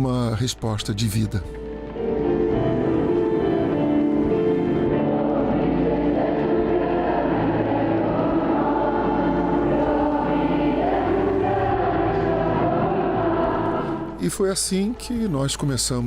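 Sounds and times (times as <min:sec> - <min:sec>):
slow music of held chords: 0:01.5 - 0:14.2
choir-like voices: 0:02.0 - 0:16.0.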